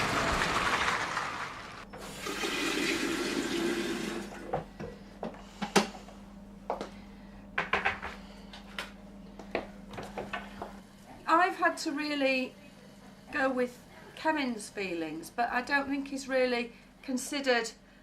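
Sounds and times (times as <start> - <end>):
steady low hum: 4.3 - 18.0.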